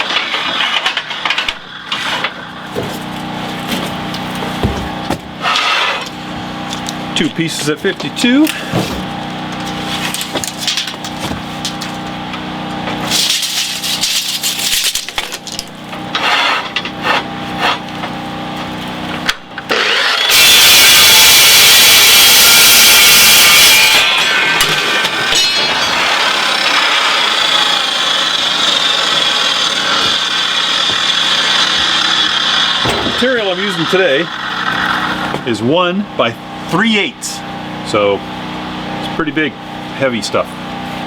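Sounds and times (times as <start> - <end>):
metal saw running: 0.0 - 40.9
saw blade screeching through steel: 5.4 - 6.1, 16.1 - 17.8, 19.7 - 35.3
steel bar clanking: 23.8 - 27.1.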